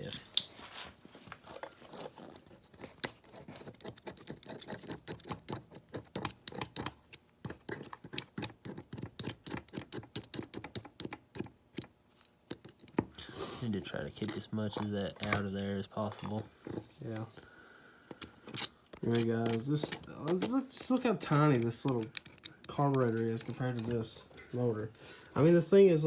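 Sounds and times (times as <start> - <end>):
blade scraping gasket: 18.4 - 24.7.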